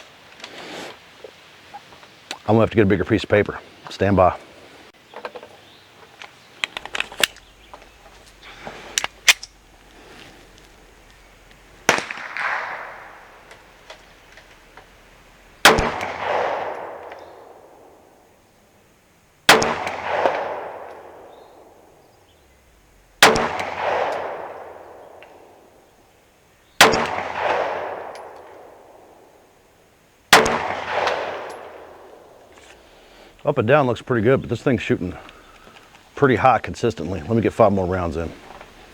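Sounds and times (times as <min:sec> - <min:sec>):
pistol shots with echo: 0:11.9 - 0:13.4, 0:15.6 - 0:17.9, 0:19.5 - 0:21.8, 0:23.2 - 0:25.5, 0:26.8 - 0:29.0, 0:30.3 - 0:32.3.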